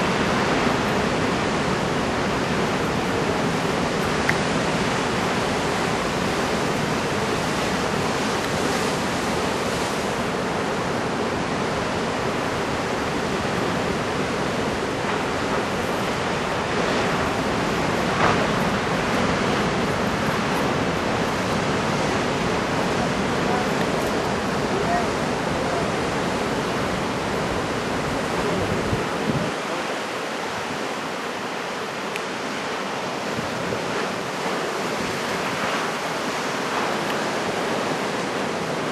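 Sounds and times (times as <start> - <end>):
heavy surf breaking: 0.0 - 38.9
surf breaking: 12.4 - 31.1.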